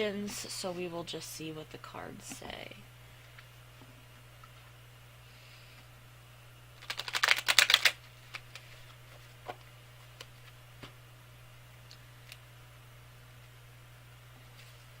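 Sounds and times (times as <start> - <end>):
cards tapping: 6.8 - 8.5
cards being shuffled: 6.8 - 10.6.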